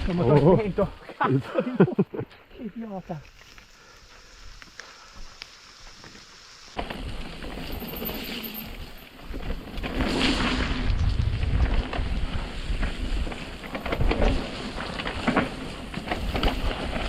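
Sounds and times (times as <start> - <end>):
tyres through mud and water: 4.9 - 17.0
wind on microphone: 9.3 - 14.8
bike knocks and rattles: 11.5 - 17.0.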